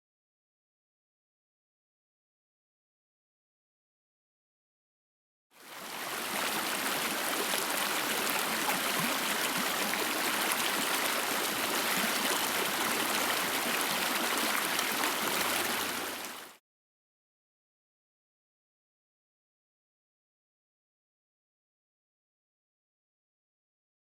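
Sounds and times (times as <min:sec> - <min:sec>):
creek flowing: 0:05.6 - 0:16.6.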